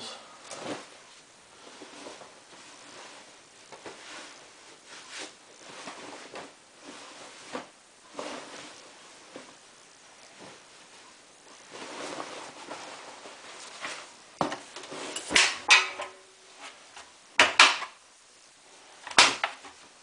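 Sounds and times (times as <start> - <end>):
fabric rustling: 0.6 - 15.7.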